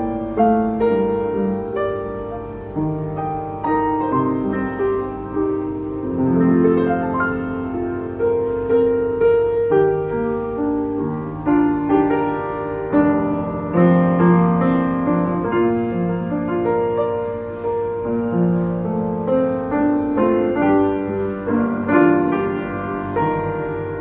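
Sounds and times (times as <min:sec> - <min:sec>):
upright piano playing: 0:00.0 - 0:24.0.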